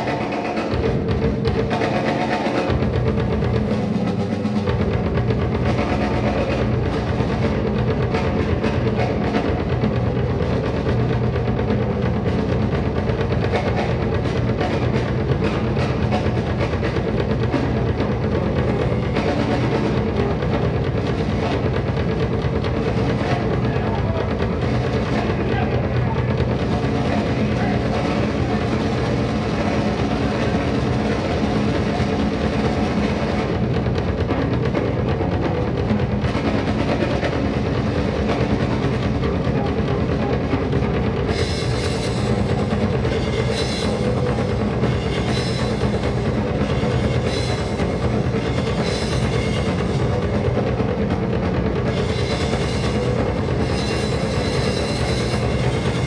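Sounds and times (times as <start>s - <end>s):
loud drumming music: 0.0s - 56.0s.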